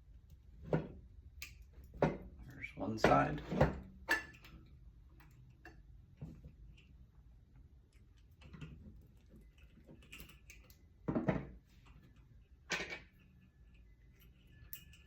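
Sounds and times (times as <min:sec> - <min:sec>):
metal chain links clicking: 0:14.2 - 0:15.0.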